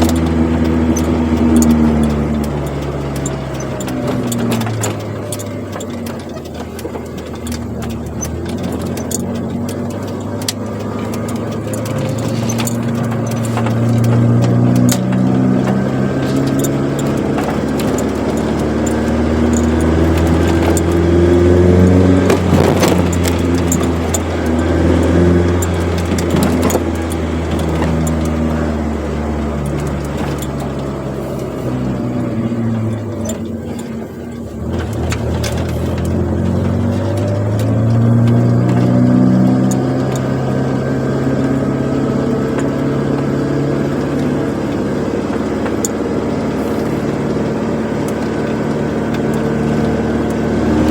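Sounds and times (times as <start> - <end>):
car engine accelerating: 0.0 - 50.9.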